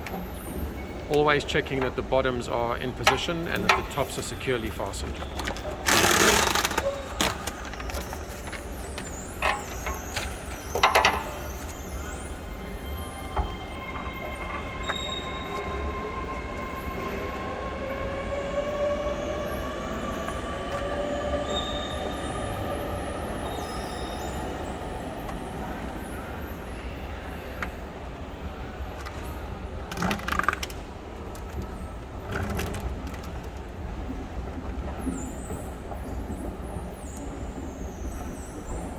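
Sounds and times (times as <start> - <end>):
train whining tones: 0.0 - 29.4
low train rumble: 0.0 - 38.9.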